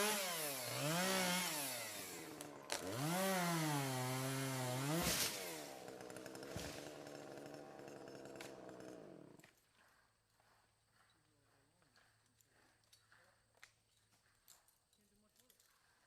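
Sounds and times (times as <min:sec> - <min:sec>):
chainsaw engine revving: 0:00.0 - 0:09.4.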